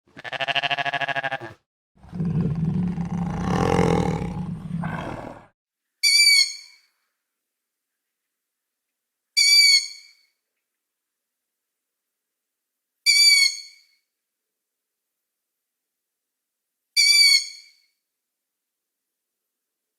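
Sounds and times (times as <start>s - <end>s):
short high-pitched animal calls: 0.1s - 1.6s
low animal roar: 0.2s - 5.5s.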